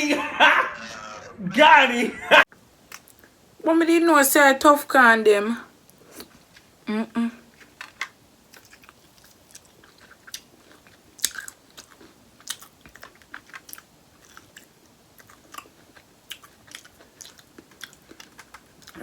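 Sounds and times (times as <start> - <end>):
person biting and chewing: 7.6 - 19.0.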